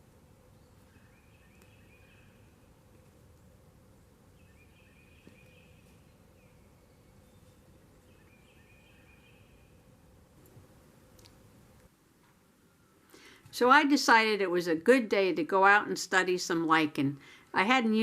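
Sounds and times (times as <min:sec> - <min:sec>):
faint outdoor ambience: 0:00.0 - 0:18.0.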